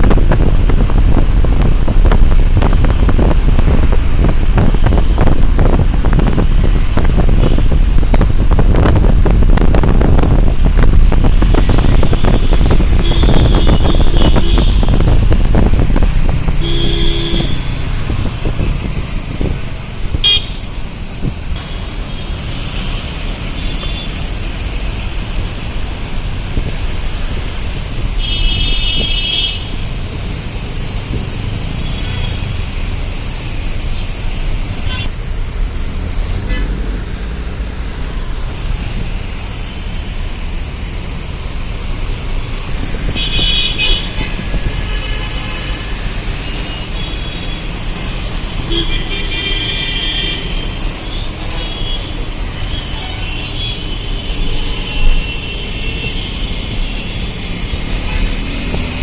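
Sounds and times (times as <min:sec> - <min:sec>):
wind rumbling on microphone: 0:00.0 - 0:21.6, 0:24.2 - 0:46.5, 0:56.6 - 0:59.0
road traffic: 0:00.0 - 0:59.0
vehicle horns honking: 0:11.6 - 0:15.1, 0:16.6 - 0:18.0, 0:20.2 - 0:20.8, 0:28.2 - 0:31.0, 0:34.7 - 0:35.2, 0:43.1 - 0:47.8, 0:48.6 - 0:59.0.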